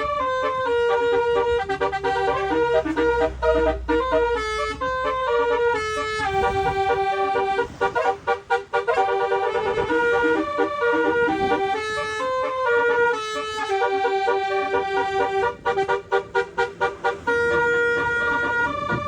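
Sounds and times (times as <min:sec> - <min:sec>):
air horn playing a tune: 0:00.0 - 0:19.0.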